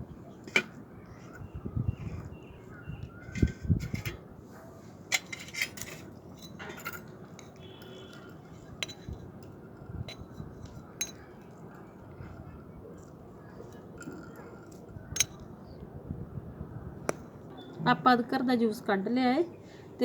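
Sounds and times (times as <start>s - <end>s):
utensils clinking against bowl: 5.1s - 15.5s.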